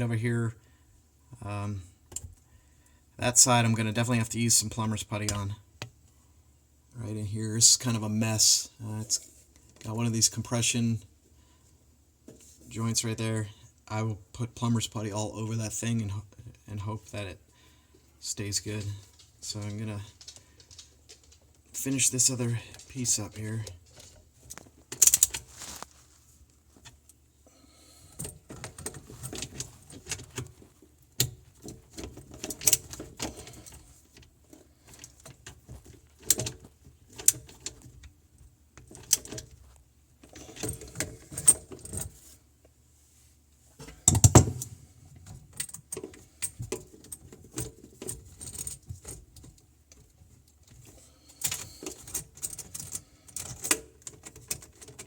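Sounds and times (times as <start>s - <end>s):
pipe fittings clicking and rattling: 18.5s - 26.0s, 28.0s - 42.2s, 43.8s - 55.0s.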